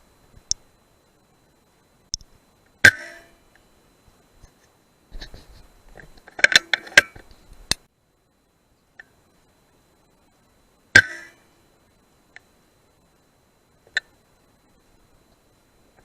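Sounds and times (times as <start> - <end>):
air rifle shot with metallic ring: 2.8 - 3.4, 11.0 - 11.4.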